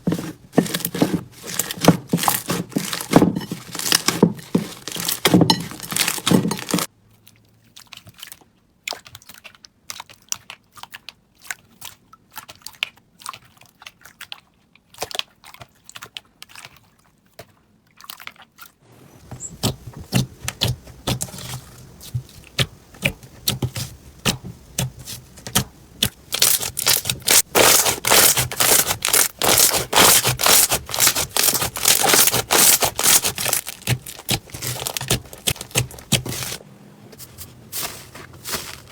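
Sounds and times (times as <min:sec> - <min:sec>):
slime crackling and popping: 0:01.6 - 0:06.9, 0:25.5 - 0:36.6.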